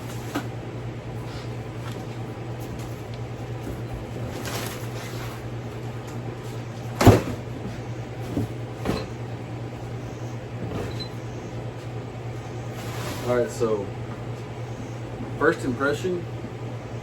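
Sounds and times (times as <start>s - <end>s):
shop fan humming: 0.0s - 17.0s
cardboard packing rustling: 1.7s - 8.8s.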